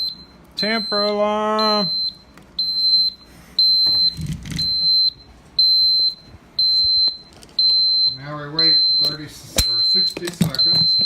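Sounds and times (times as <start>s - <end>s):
high-pitched alarm beeps: 0.0s - 11.0s.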